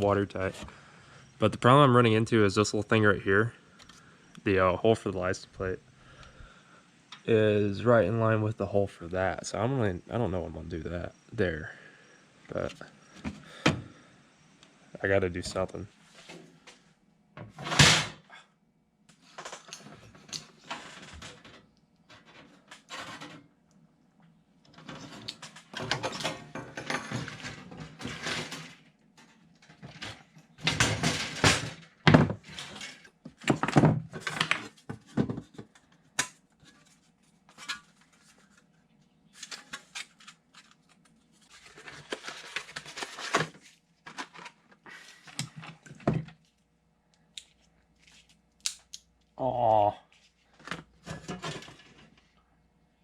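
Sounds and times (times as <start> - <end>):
knocks and clatters of tools: 19.2 - 23.5, 24.7 - 38.3, 50.6 - 52.2.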